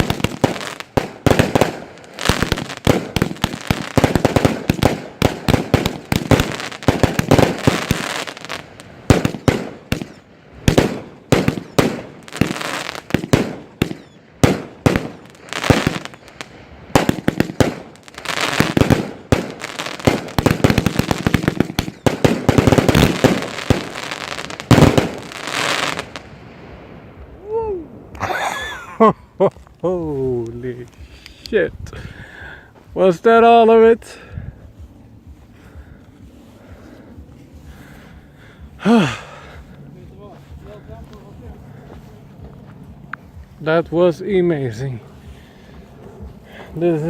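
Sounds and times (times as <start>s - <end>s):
fireworks banging: 0.0s - 26.2s.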